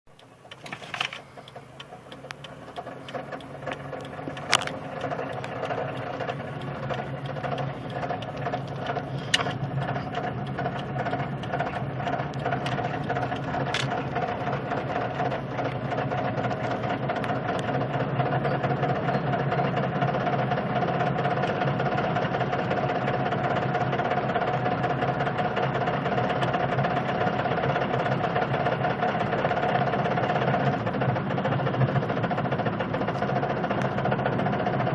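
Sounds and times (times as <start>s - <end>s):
sharp clicks: 0.1s - 14.0s
vehicle engine running: 0.1s - 34.9s
rapid engine knocking: 1.4s - 34.9s.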